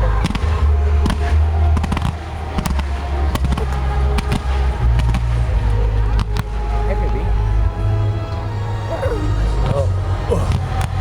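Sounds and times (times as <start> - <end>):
fireworks cracking: 0.0 - 7.5, 9.9 - 11.0.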